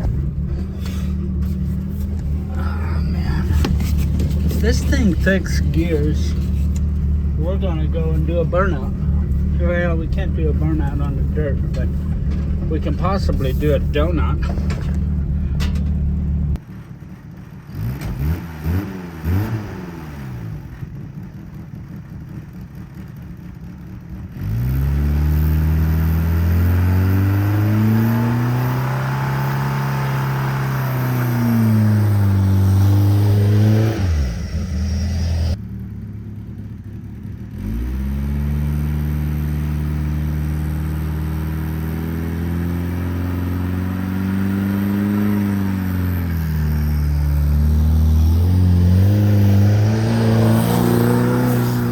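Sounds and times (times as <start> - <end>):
car engine revving: 0.0 - 16.7, 17.6 - 21.1, 23.0 - 51.9.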